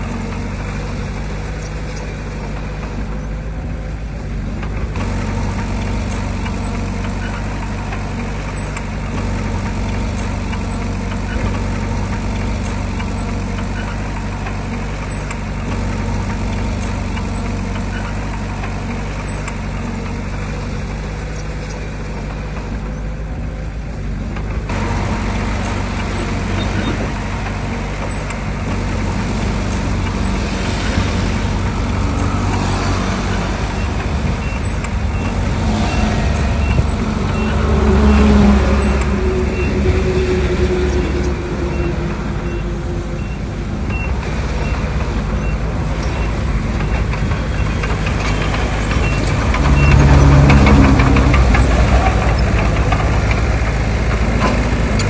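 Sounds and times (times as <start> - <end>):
diesel engine droning: 0.0 - 55.0.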